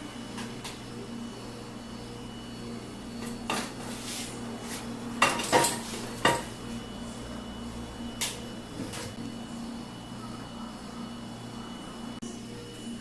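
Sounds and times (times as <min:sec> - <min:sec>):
dishes and cutlery clinking: 0:05.2 - 0:06.5.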